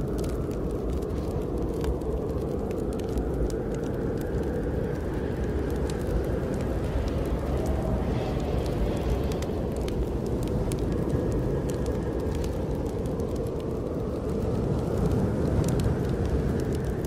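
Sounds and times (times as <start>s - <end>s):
snowstorm wind rumble: 0.0s - 17.0s
wood fire crackling: 0.0s - 17.0s.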